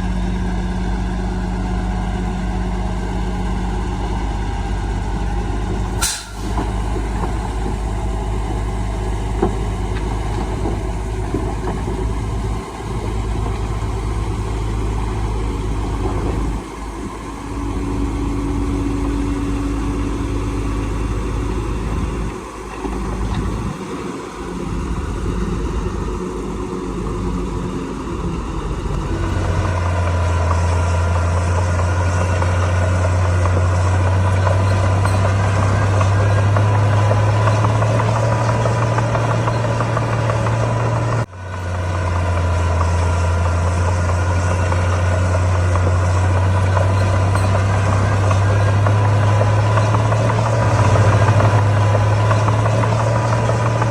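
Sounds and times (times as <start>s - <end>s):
heavy diesel engine running: 0.0s - 53.9s
sharp click: 6.0s - 6.8s.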